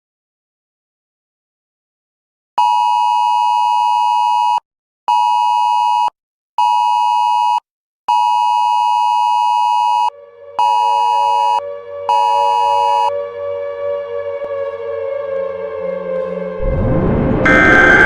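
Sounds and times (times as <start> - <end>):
soft music: 10.1 - 17.5
electronic alert tone beeping: 17.4 - 18.0.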